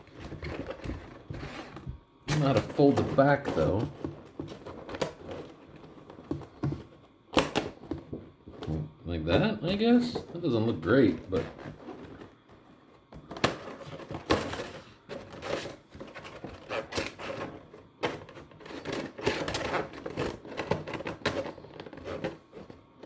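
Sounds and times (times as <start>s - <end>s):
plastic panels clicking and rattling: 0.0s - 8.8s, 13.1s - 22.8s.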